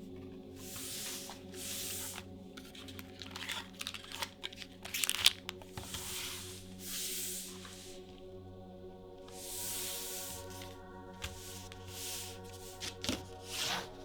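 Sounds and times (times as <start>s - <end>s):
soft background music: 0.0s - 14.0s
cards sliding swishes: 0.1s - 8.2s, 9.3s - 14.0s
foil wrapper crinkling: 1.4s - 6.8s
wrapper tearing: 2.2s - 6.7s.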